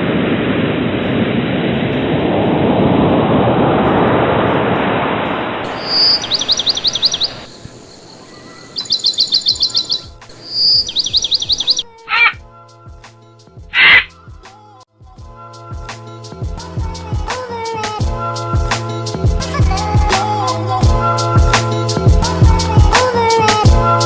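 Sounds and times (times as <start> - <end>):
rushing noise: 0.0 - 12.4
bird singing: 5.6 - 12.4, 13.8 - 14.1.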